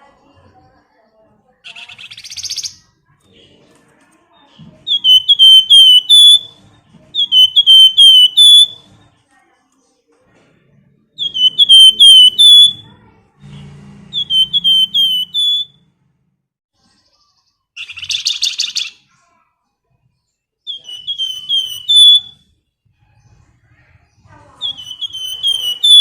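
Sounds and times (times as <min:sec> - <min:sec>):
bird whistling calls: 0:04.9 - 0:06.6, 0:07.2 - 0:08.8, 0:11.2 - 0:12.8, 0:14.1 - 0:15.8, 0:20.7 - 0:22.4, 0:24.6 - 0:26.0.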